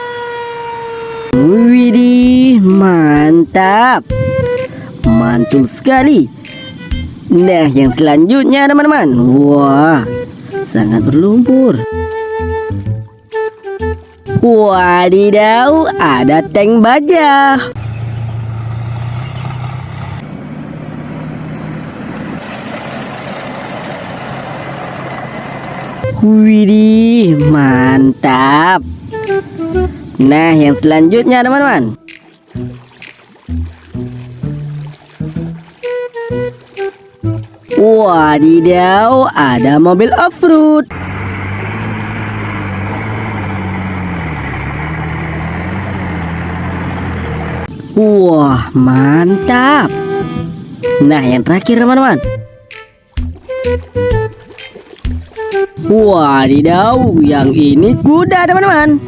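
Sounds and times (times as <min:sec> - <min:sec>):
motor hum: 0:40.9 - 0:47.9.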